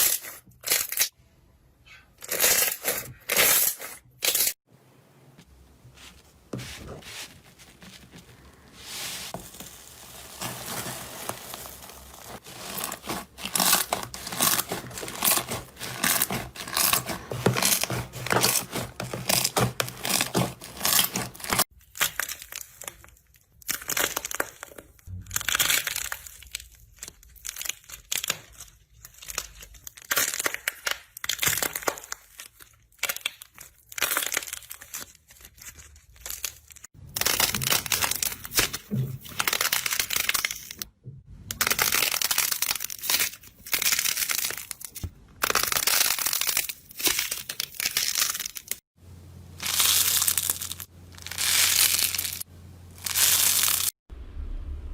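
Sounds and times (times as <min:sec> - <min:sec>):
slime crackling: 0:06.9 - 0:23.0.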